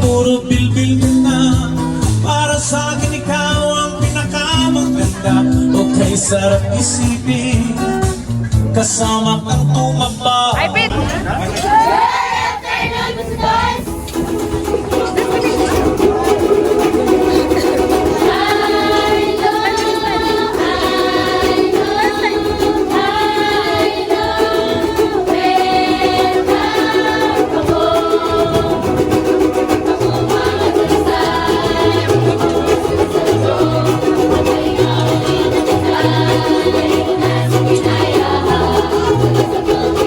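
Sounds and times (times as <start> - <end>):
low bass notes: 0.0 - 40.0
strummed strings: 10.8 - 40.0.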